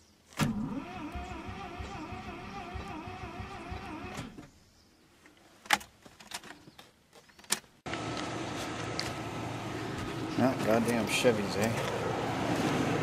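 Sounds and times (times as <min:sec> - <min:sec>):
starter motor cranking engine: 0:00.4 - 0:04.4.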